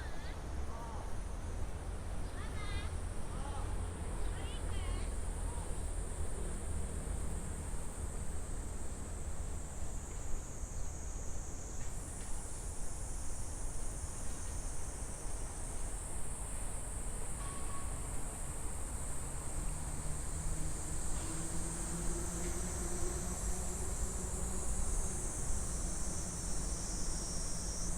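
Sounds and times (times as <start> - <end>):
cicadas buzzing: 0.0 - 27.9.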